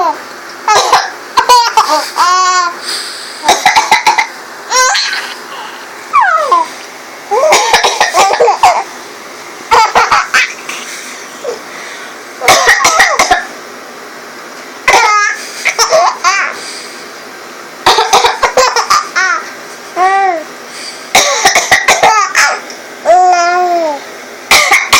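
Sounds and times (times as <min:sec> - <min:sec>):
baby laughing: 0:00.0 - 0:02.8, 0:03.4 - 0:05.4, 0:06.2 - 0:06.7, 0:07.3 - 0:08.9, 0:09.7 - 0:10.8, 0:14.9 - 0:16.6, 0:17.9 - 0:20.5, 0:21.4 - 0:24.0
woman coughing: 0:00.7 - 0:01.2, 0:03.4 - 0:04.3, 0:07.4 - 0:08.8, 0:12.4 - 0:13.5, 0:17.9 - 0:19.1, 0:21.2 - 0:22.3, 0:24.5 - 0:24.9.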